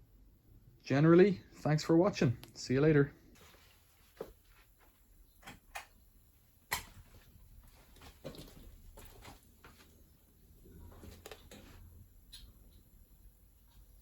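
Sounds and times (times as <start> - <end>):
faint low hum: 0.0 - 14.0
faint clicks and knocks: 10.6 - 12.9.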